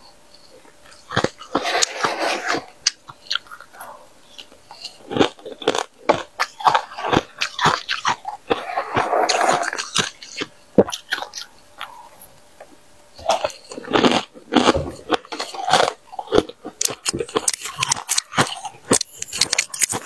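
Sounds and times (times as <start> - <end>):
person crunching frost: 0.9 - 12.3, 13.2 - 20.0.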